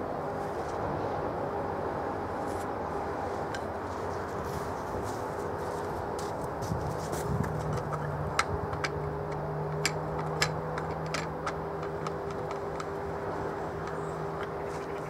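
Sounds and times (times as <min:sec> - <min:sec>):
steady low hum: 0:00.0 - 0:15.0
rifle handling clicks and taps: 0:07.4 - 0:13.0.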